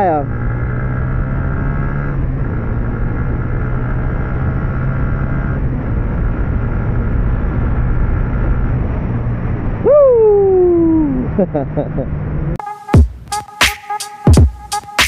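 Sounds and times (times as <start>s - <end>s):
motorcycle engine running: 0.0s - 8.7s
wind and road noise: 0.0s - 12.6s.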